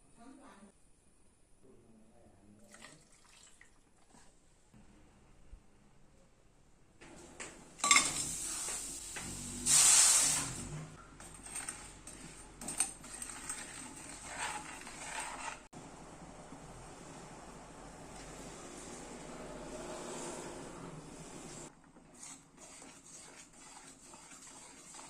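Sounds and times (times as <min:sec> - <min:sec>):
dishes and utensils clinking: 0:07.8 - 0:08.4, 0:11.0 - 0:15.7
short hissing rush: 0:09.4 - 0:10.8.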